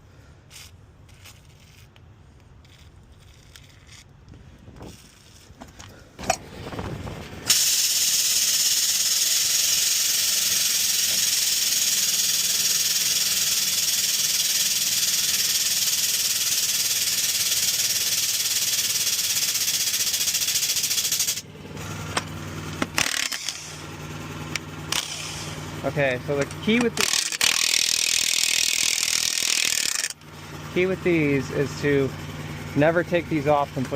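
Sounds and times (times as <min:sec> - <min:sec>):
aerosol spray can hissing: 0:07.5 - 0:21.4.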